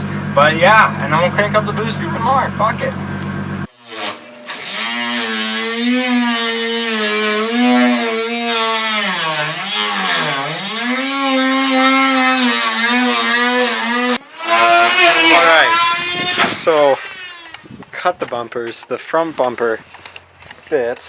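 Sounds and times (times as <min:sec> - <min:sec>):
rotary tool cutting plastic: 0:03.7 - 0:17.8.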